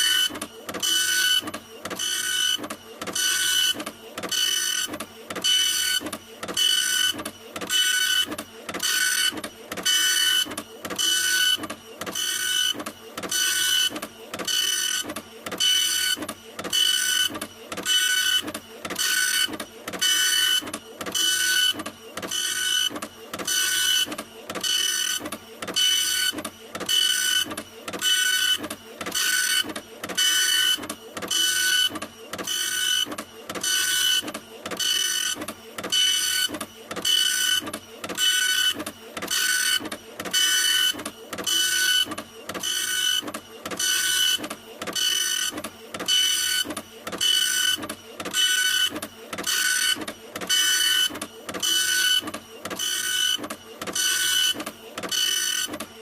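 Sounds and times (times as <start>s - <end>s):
printer motor whirring: 0.0s - 56.0s.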